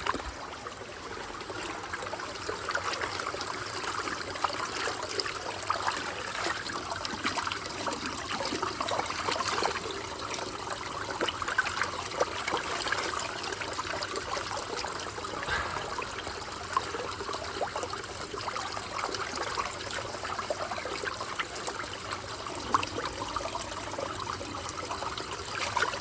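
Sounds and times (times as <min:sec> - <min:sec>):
water trickling and splashing: 0:00.0 - 0:26.0.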